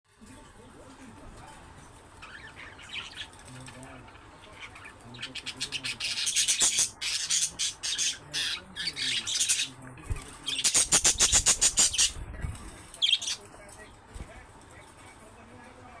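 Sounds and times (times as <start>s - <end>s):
budgerigars chattering and squawking: 2.1s - 12.2s, 12.8s - 13.5s.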